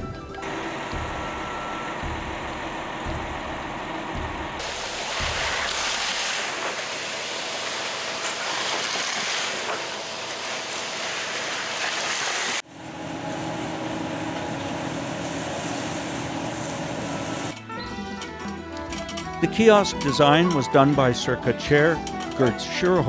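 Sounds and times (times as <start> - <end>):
steady hum with low tones: 0.4 - 6.8
machinery running: 0.4 - 17.6.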